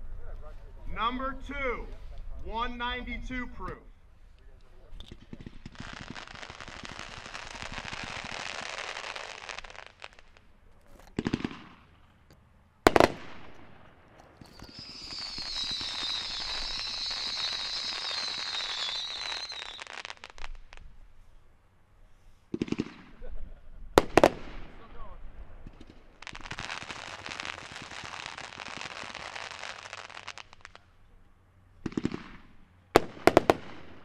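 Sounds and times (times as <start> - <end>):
fireworks crackling: 0.0 - 31.1, 31.8 - 34.0
firework bangs: 4.9 - 12.0, 12.8 - 21.0, 22.5 - 30.9, 31.8 - 34.0.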